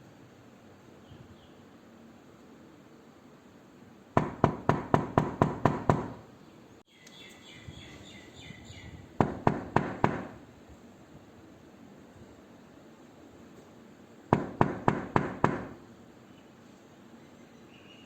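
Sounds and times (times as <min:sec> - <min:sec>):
knuckles knocking on a door: 0:04.2 - 0:06.2, 0:09.2 - 0:10.4, 0:14.4 - 0:15.8.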